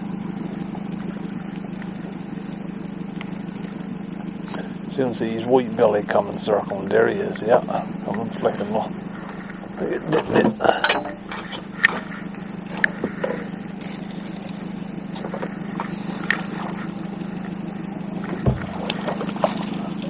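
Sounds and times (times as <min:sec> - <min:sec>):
boat motor idling: 0:00.0 - 0:20.0.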